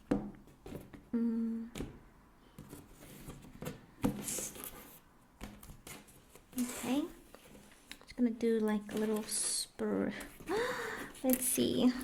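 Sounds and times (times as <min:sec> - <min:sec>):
person humming a note: 0:01.2 - 0:01.7.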